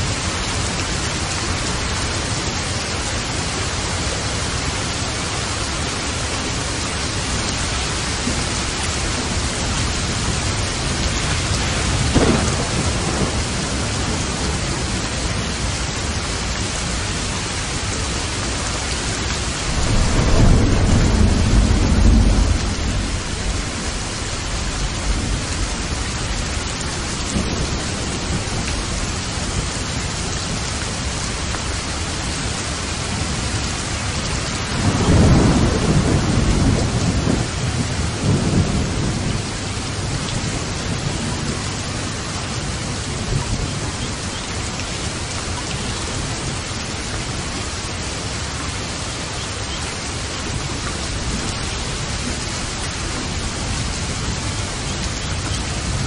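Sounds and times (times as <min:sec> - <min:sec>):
heavy rain: 0:00.0 - 0:56.0
low rolling thunder rumble: 0:05.4 - 0:45.2
thunder crack: 0:11.6 - 0:14.6, 0:19.6 - 0:25.9, 0:34.7 - 0:39.2.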